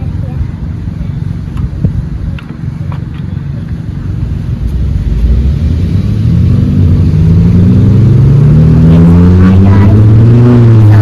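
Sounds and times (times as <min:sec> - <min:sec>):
low engine rumble: 0:00.0 - 0:11.0
engine note rising in pitch: 0:04.8 - 0:11.0.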